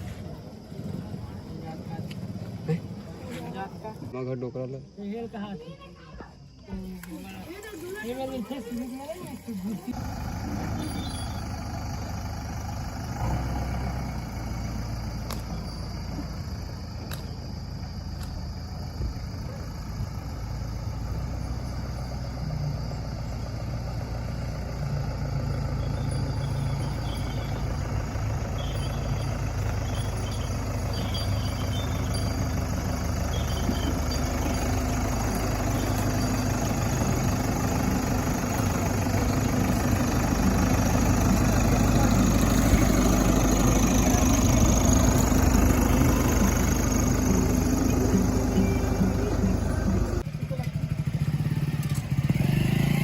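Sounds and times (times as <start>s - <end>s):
diesel engines running: 0.0s - 4.4s, 6.6s - 53.0s.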